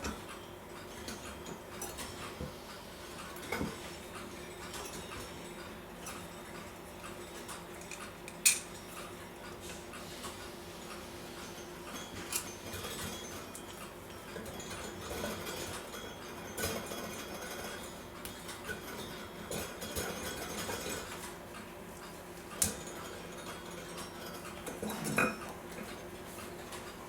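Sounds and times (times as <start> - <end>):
metal clock parts clicking: 7.8 - 8.7.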